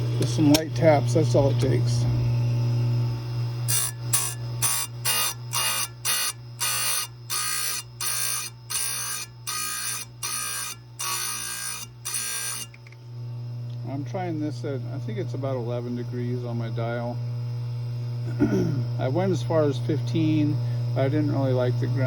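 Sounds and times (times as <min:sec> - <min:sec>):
grinder motor running: 0:00.0 - 0:17.2
grinding wheel rasping on chain: 0:03.6 - 0:12.8.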